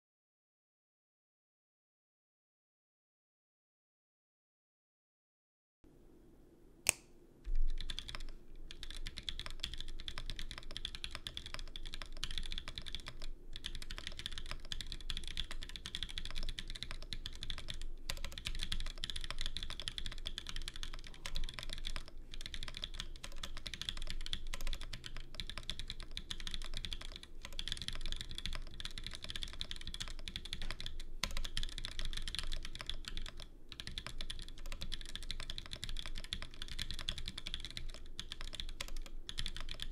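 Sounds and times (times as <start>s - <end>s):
sharp click: 6.8s - 7.1s
typing on mechanical keyboard: 7.6s - 39.9s.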